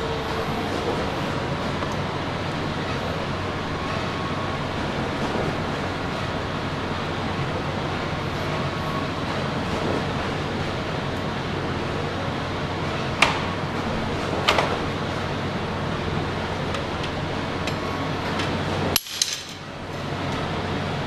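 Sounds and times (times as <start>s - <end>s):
metal parts clattering: 19.0s - 19.7s
metal parts clinking: 19.0s - 19.7s.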